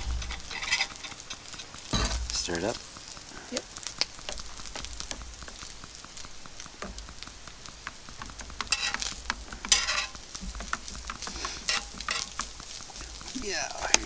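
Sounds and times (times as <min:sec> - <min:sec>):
spoon scraping: 0:00.0 - 0:02.4, 0:08.6 - 0:14.0.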